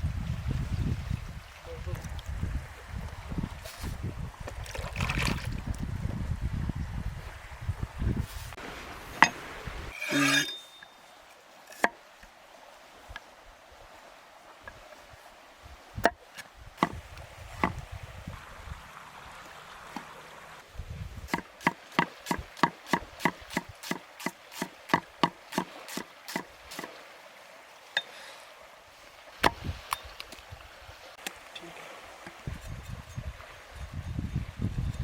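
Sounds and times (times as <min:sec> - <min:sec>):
knife chopping on wood: 0:11.8 - 0:12.0, 0:16.8 - 0:17.0, 0:21.3 - 0:26.9.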